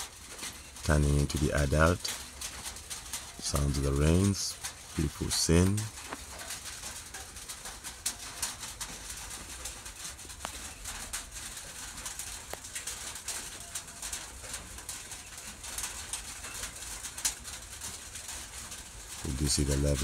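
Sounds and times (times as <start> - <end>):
rain pattering: 0.0 - 20.0.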